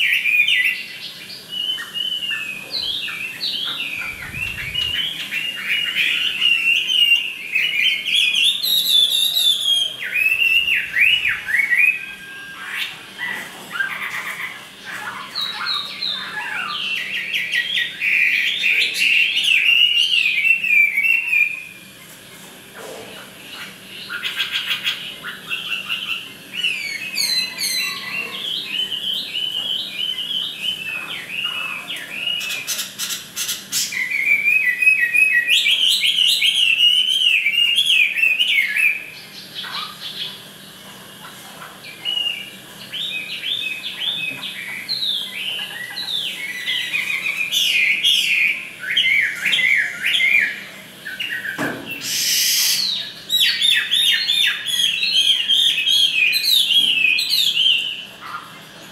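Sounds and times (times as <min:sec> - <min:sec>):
bird singing chirps and whistles: 0:00.0 - 0:21.8, 0:23.5 - 0:40.4, 0:41.8 - 0:58.4.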